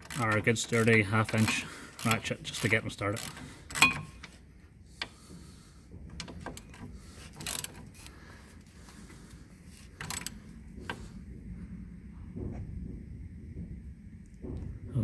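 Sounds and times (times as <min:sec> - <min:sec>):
ratchet wrench clicking: 0:00.0 - 0:04.2, 0:07.4 - 0:07.8.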